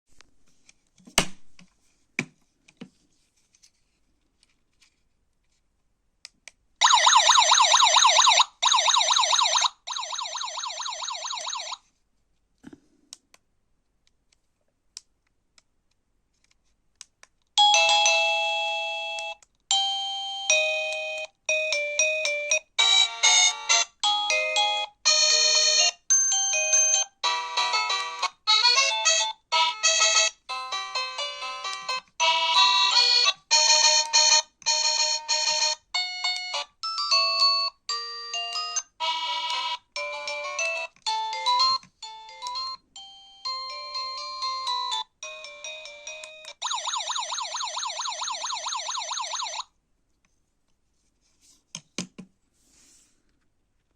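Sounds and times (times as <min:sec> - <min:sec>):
fast-warbling alarm siren: 0:06.8 - 0:11.8, 0:46.6 - 0:49.6.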